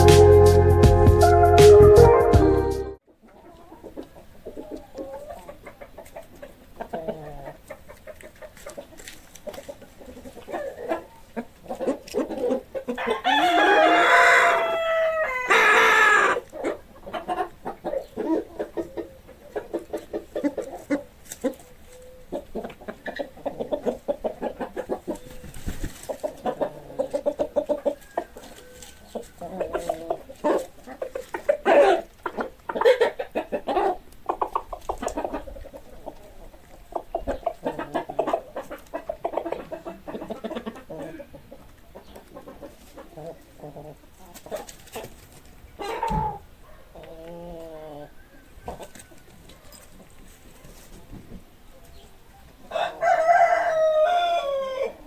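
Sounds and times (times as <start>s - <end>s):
chickens clucking: 0.0s - 55.0s
rooster crowing: 13.0s - 16.4s, 27.9s - 29.5s, 52.7s - 55.0s.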